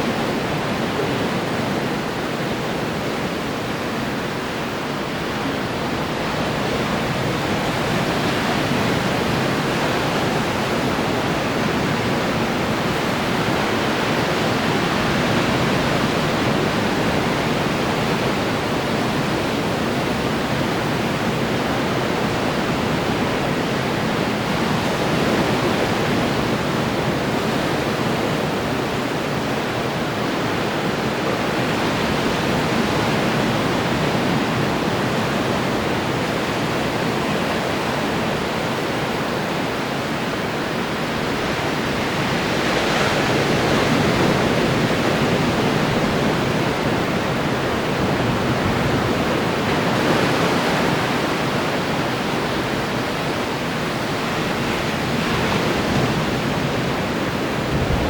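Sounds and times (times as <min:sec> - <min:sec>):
ocean surf breaking on shore: 0:00.0 - 0:58.0.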